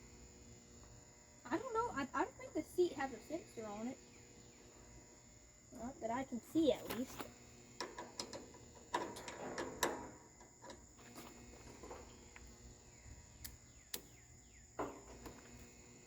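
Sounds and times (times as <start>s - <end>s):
insect chirring: 0.0s - 16.0s
tools and metal parts clicking: 7.8s - 10.8s.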